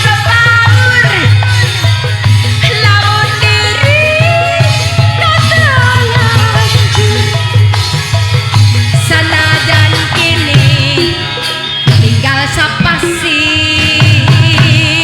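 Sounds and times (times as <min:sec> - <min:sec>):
live band instrumental music: 0:00.0 - 0:15.0.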